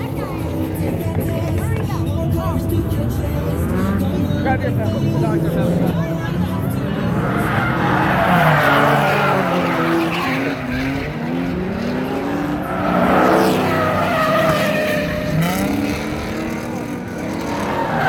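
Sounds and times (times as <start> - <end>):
car engines revving: 0.0 - 18.0
tires squealing: 0.0 - 18.0.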